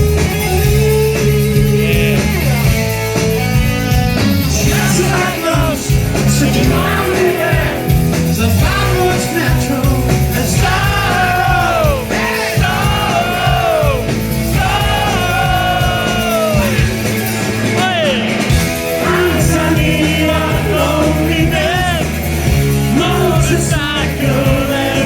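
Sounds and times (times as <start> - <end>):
rock band playing: 0.0 - 25.0
man singing: 4.5 - 17.0, 17.6 - 22.2, 22.9 - 25.0.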